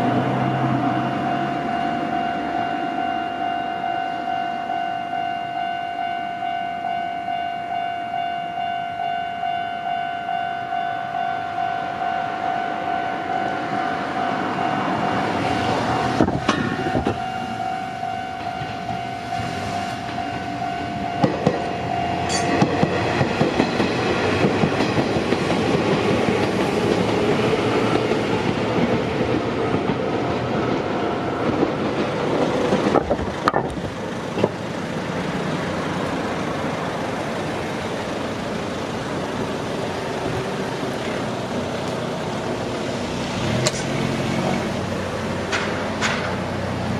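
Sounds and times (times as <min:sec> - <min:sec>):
level crossing alarm dinging: 0:00.0 - 0:23.2
train wheels clacking over rails: 0:21.2 - 0:46.9.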